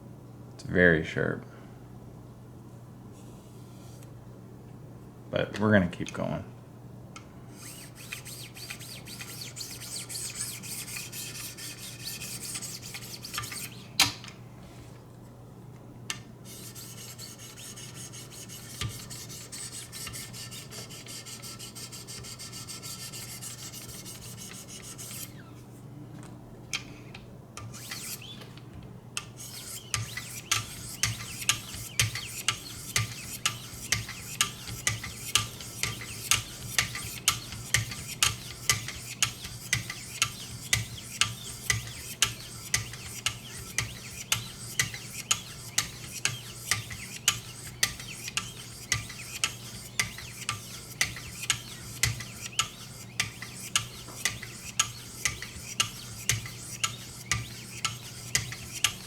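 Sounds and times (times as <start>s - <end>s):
knife scraping on sharpening stone: 27.6s - 28.4s, 29.2s - 59.0s.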